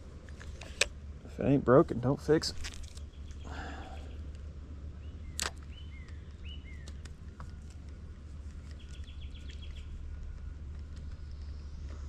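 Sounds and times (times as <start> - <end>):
small bird chirping: 5.0 - 7.1, 8.6 - 12.0.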